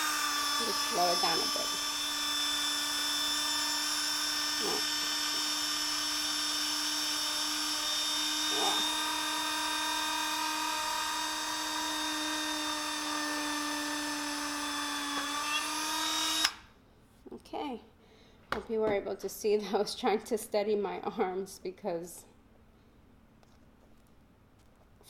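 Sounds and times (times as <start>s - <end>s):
rotary tool drilling whine: 0.0s - 16.7s.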